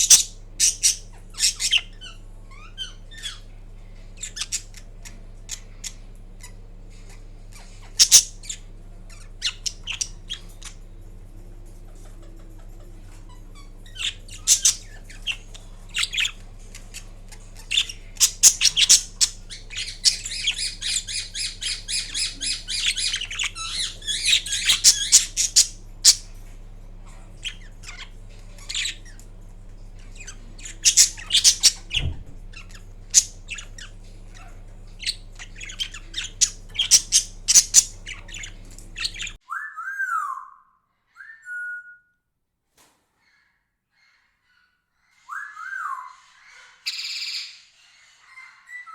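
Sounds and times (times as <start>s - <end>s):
parakeet squeaks and chattering: 0.0s - 11.0s, 11.7s - 39.4s
steady low hum: 0.0s - 39.4s.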